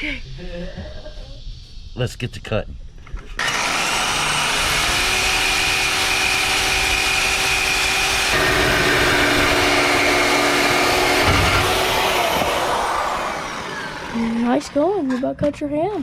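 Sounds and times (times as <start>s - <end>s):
power tool cutting steel pipe: 3.4s - 15.0s.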